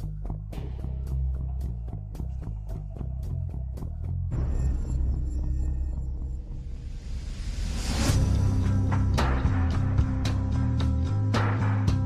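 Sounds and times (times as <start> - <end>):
rock music with guitar and drums: 8.4 - 12.0.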